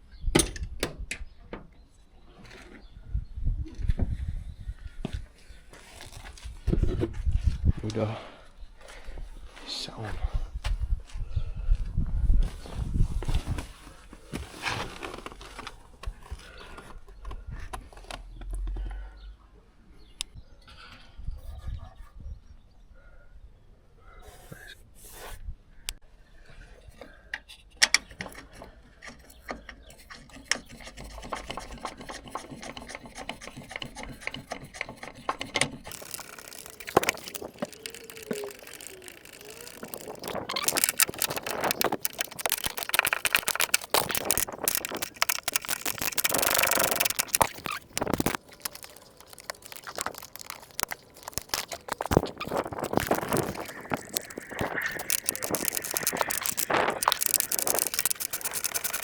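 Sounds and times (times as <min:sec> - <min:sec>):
mechanical clicks and scraping: 0:28.0 - 0:59.0.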